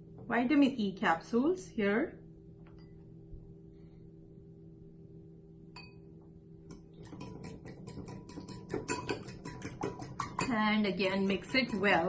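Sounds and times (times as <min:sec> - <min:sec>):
fork whisking egg in a bowl: 0:06.7 - 0:12.0.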